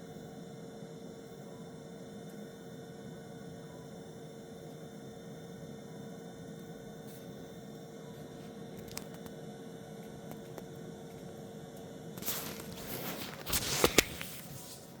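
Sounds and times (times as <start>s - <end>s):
steady low hum: 0.0s - 15.0s
fire crackles: 10.0s - 15.0s
wood fire burning: 10.0s - 15.0s.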